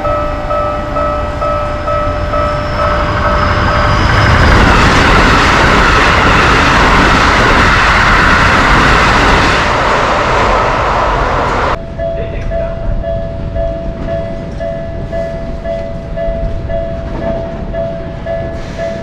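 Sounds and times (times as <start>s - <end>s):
level crossing bell ringing: 0.0s - 4.1s
train passing at high speed: 0.0s - 19.0s.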